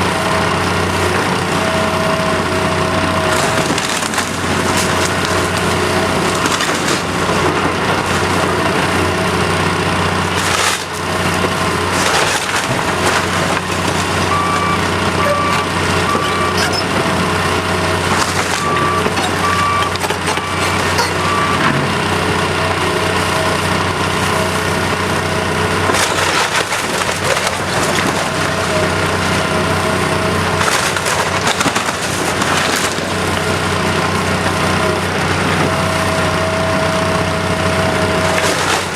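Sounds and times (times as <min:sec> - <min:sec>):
machine engine running: 0:00.0 - 0:38.9
timber cracking and crashing: 0:03.2 - 0:09.1, 0:10.0 - 0:16.8, 0:18.0 - 0:21.0, 0:25.8 - 0:34.6, 0:38.2 - 0:38.9.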